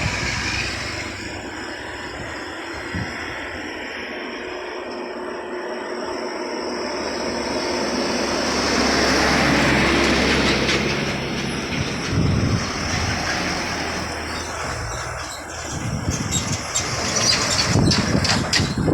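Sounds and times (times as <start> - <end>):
low engine drone: 0.0 - 18.9
train rushing rumble: 0.0 - 18.9
wheels clicking on rails: 7.9 - 18.9.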